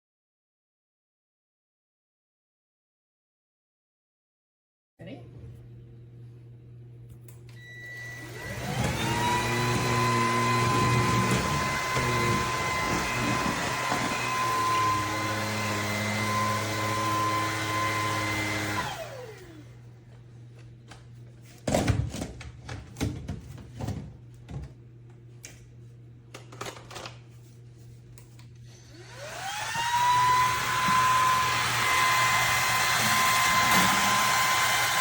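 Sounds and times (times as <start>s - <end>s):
vacuum cleaner motor whining: 7.5s - 19.9s, 28.6s - 35.0s.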